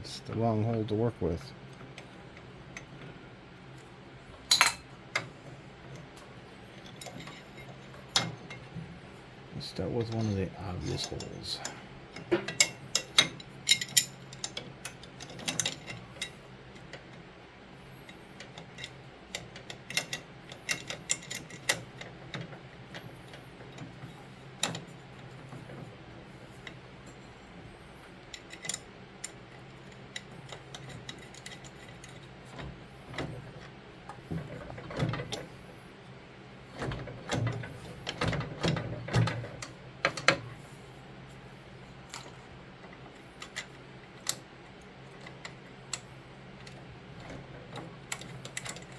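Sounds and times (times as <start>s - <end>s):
steady low hum: 0.0s - 48.9s
metal tools clinking: 4.5s - 4.8s.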